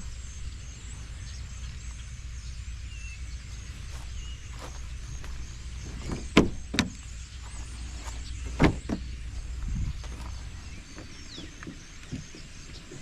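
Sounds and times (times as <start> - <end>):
low steady rumble: 0.0 - 13.0
sharp knocks: 6.0 - 7.0.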